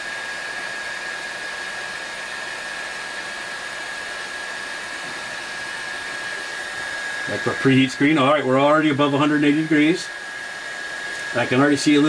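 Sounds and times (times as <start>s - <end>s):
small cooling fans running: 0.0s - 12.0s.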